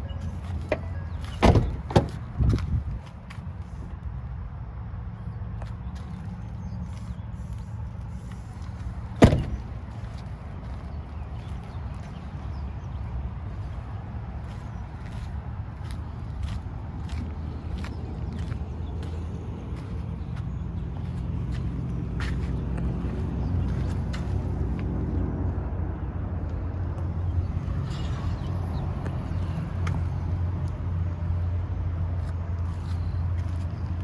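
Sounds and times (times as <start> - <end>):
pickup engine running: 0.4 - 2.7, 8.2 - 10.8.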